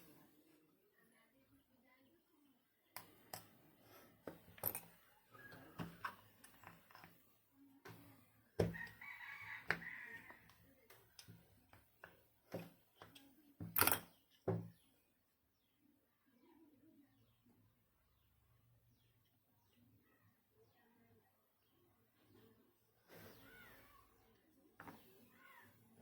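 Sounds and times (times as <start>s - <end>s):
clicks and taps of small parts: 4.2s - 4.9s.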